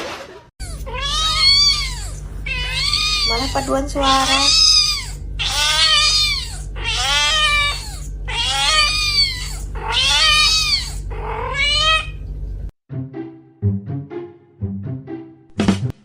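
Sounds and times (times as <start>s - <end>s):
cat meowing loudly: 0.6s - 12.2s
steady low hum: 0.6s - 12.7s.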